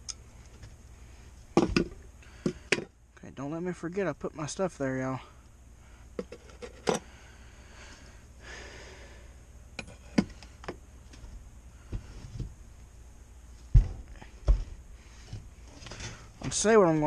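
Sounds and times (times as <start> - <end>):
heavy low thump: 13.7 - 14.8.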